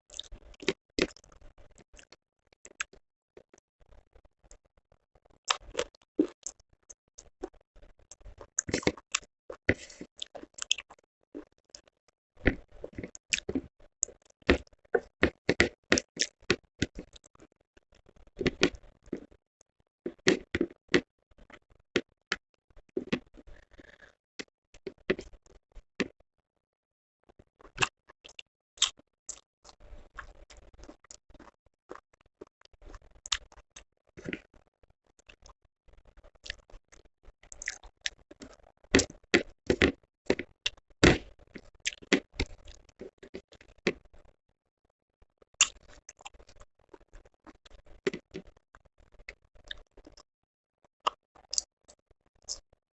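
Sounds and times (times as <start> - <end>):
person chewing food: 0.1 - 2.1, 2.7 - 4.6, 5.2 - 6.6, 7.2 - 19.3, 20.1 - 21.6, 22.9 - 24.2, 24.8 - 26.1, 27.6 - 33.6, 34.2 - 34.6, 35.2 - 44.3, 45.6 - 50.2, 51.1 - 52.7.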